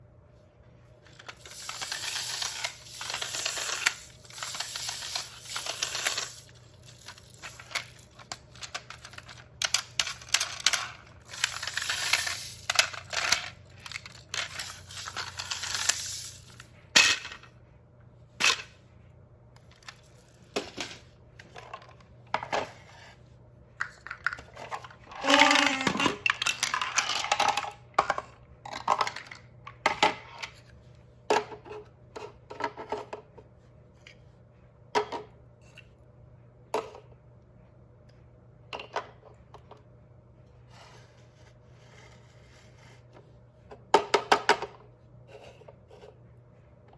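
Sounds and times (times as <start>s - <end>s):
toy pieces rattling and clacking: 1.1s - 17.4s, 19.7s - 21.6s, 23.8s - 29.5s.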